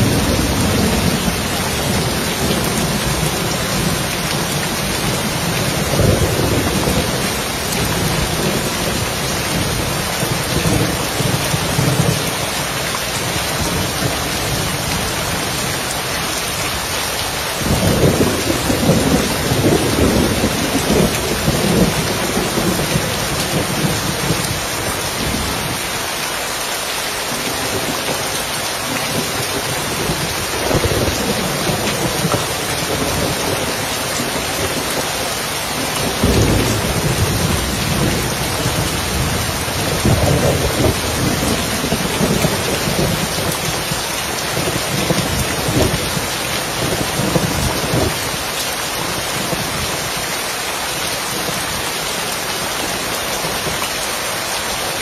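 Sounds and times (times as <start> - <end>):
rain on a roof: 0.0 - 55.0
thunder rumbling: 17.6 - 25.8, 29.1 - 48.4.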